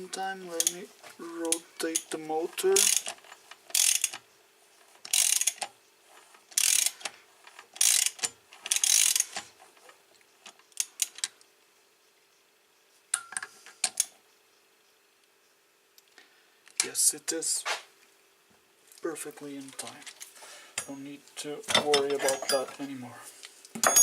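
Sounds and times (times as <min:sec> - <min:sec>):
ratchet wrench rasping: 0:00.5 - 0:00.8, 0:01.5 - 0:04.2, 0:05.0 - 0:05.7, 0:06.5 - 0:07.1, 0:07.8 - 0:09.4.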